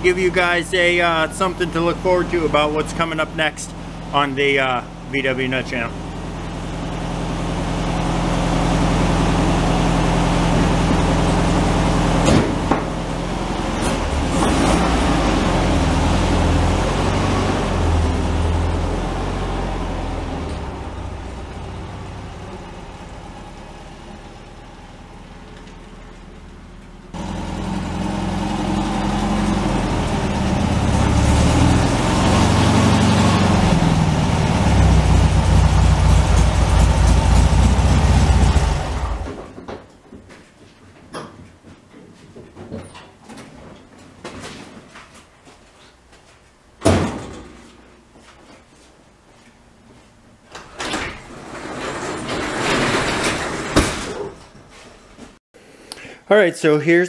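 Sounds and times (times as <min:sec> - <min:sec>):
car engine running: 0:00.0 - 0:39.4.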